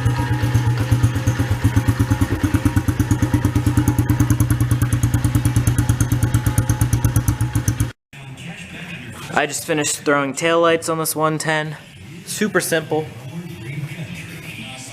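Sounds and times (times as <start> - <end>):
dirt bike engine idling: 0.0 - 8.0.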